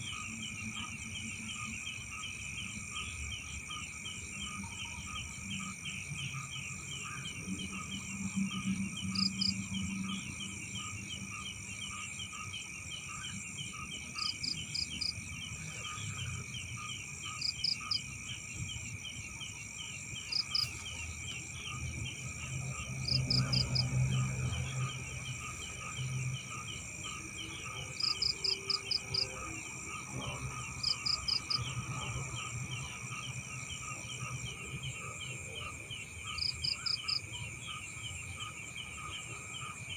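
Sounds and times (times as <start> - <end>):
fast insect chirping: 6.4 - 18.4, 19.0 - 34.6, 35.6 - 37.8.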